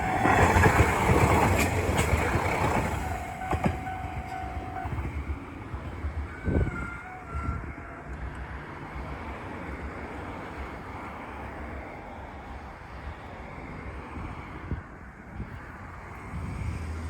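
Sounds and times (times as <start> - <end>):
wind buffeting microphone: 0.0 - 7.8, 14.2 - 17.0
train rumbling by: 0.0 - 14.5.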